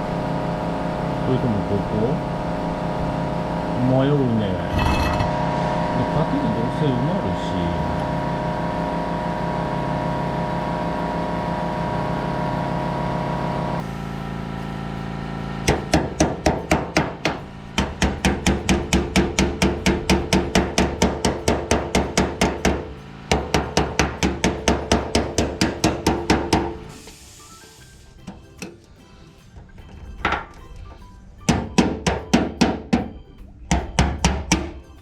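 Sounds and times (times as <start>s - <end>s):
steady hum: 0.0s - 9.0s
hammer striking sheet steel: 15.6s - 27.0s, 33.8s - 34.8s.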